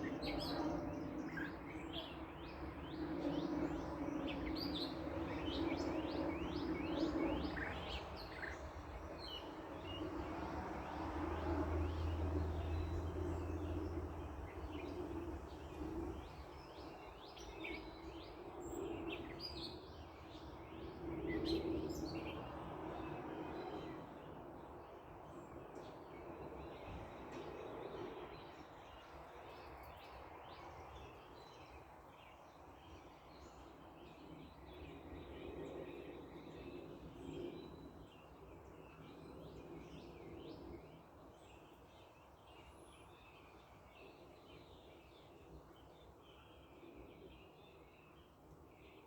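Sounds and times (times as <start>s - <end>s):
low traffic rumble: 7.4s - 16.8s.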